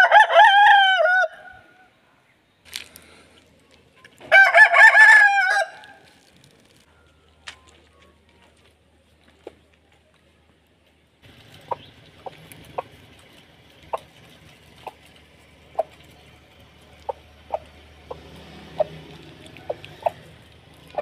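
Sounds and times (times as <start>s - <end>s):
chicken clucking: 11.3s - 16.3s, 17.0s - 21.0s.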